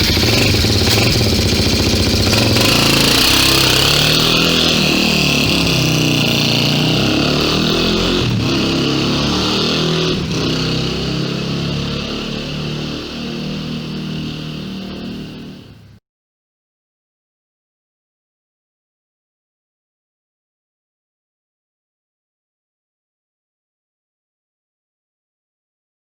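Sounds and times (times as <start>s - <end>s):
slowed motorcycle engine revving: 0.0s - 16.0s.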